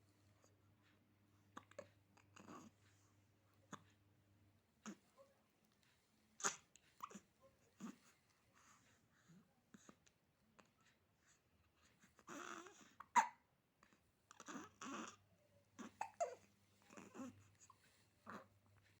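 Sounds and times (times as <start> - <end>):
baby hiccuping: 12.3 - 13.4, 15.8 - 17.2.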